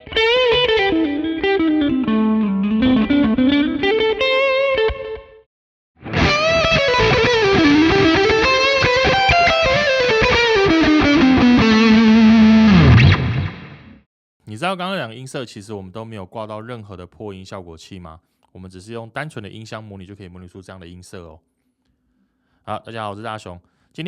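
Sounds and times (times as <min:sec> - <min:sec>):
overdriven electric guitar lead: 0:00.0 - 0:05.2, 0:06.0 - 0:14.0.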